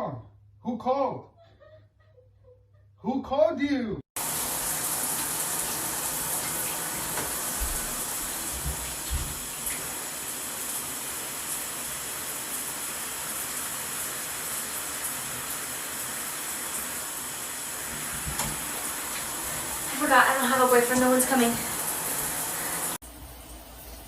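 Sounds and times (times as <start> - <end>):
shower spraying water: 4.2 - 24.0.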